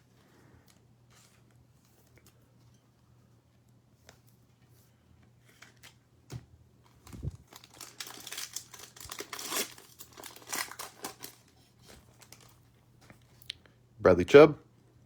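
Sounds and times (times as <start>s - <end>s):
wrapper tearing and crinkling: 7.1s - 12.6s.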